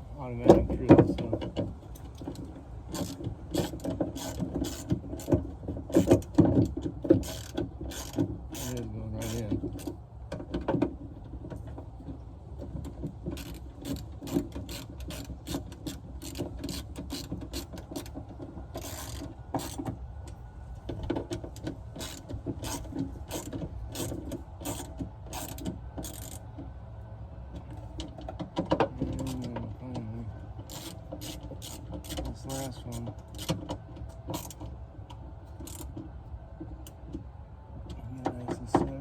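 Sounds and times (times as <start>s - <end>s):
ratchet wrench clicking: 2.9s - 5.3s, 7.2s - 9.4s, 18.8s - 19.8s, 22.0s - 26.4s, 30.7s - 32.2s.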